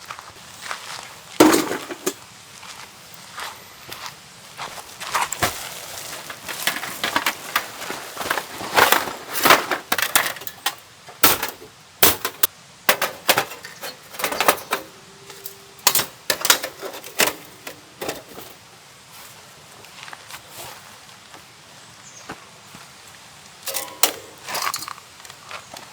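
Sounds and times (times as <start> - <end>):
hard objects knocking and clicking: 1.4 - 2.2, 6.3 - 18.5.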